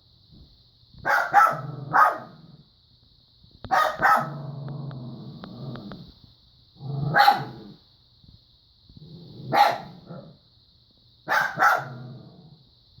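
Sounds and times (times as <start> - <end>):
dog barking: 1.0 - 2.4, 3.7 - 4.4, 7.1 - 7.8, 9.5 - 10.2, 11.3 - 12.1.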